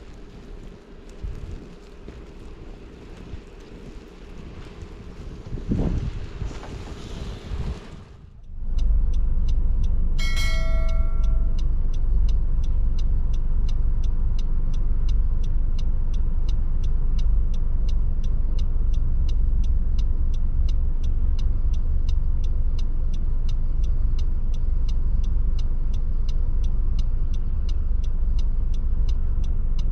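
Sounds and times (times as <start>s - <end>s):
motor vehicle rumbling: 0.0s - 29.9s
fast even ticking: 8.4s - 29.9s
short beeping chime: 10.2s - 11.6s.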